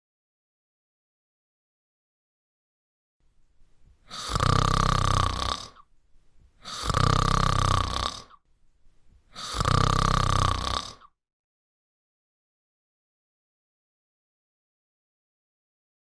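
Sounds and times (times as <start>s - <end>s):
faint breathing: 3.6s - 11.1s
person snoring loudly: 4.1s - 5.9s, 6.6s - 8.4s, 9.3s - 11.1s.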